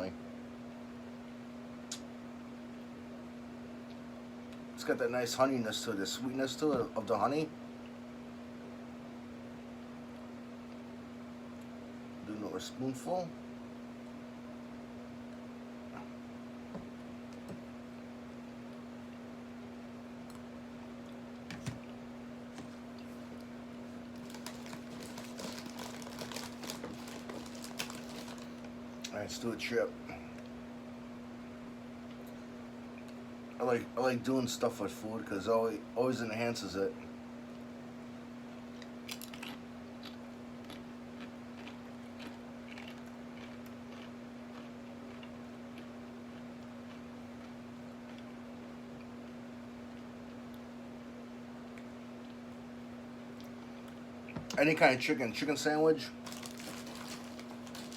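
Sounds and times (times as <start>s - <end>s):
steady hum: 0.0s - 57.9s
rustling of small objects: 24.1s - 28.7s, 56.2s - 57.9s
person crunching chip: 24.2s - 28.7s, 39.1s - 45.9s, 56.2s - 57.9s.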